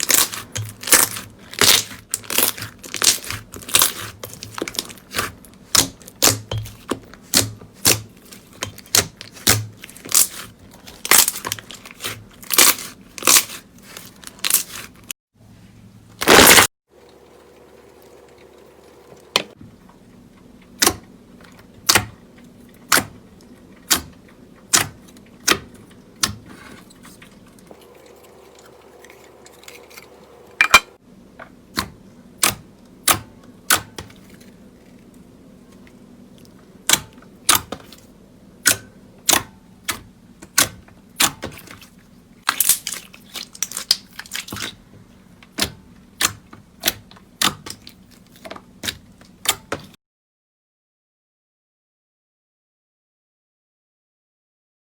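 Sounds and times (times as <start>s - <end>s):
slime being pressed by hand: 0.0s - 14.9s
air pockets popping: 16.2s - 16.7s.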